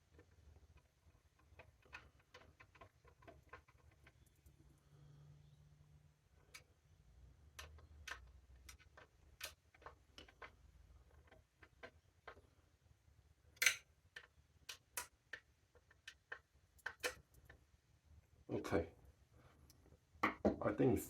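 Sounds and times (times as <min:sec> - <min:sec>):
small hard parts clicking: 0:00.0 - 0:04.8, 0:06.4 - 0:12.6, 0:13.5 - 0:17.6.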